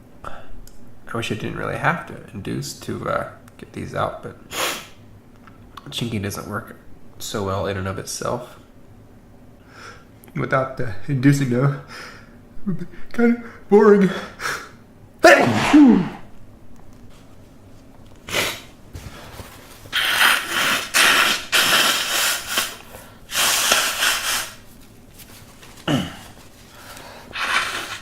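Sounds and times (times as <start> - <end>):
noisy breathing and nasal sounds: 4.5 - 5.0, 18.2 - 24.7, 25.7 - 28.0
man sneezing: 14.2 - 16.3, 18.3 - 18.7, 19.9 - 24.6, 25.8 - 26.4.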